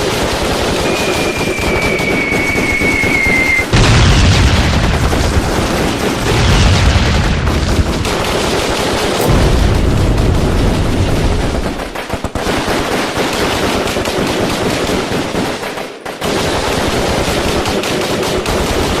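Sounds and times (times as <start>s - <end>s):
rapid automatic gunfire: 0.0s - 19.0s
deep rumble: 9.2s - 12.3s.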